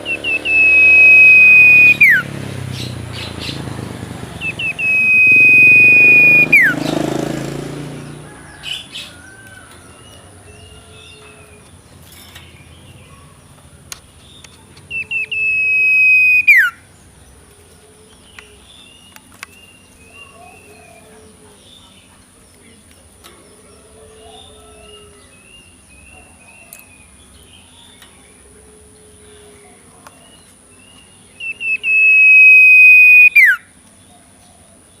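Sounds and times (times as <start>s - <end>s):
soft chirping calls: 0.0s - 7.3s, 8.5s - 34.3s
loud high whistle: 0.1s - 2.3s, 4.5s - 6.8s, 14.9s - 16.8s, 31.4s - 33.6s.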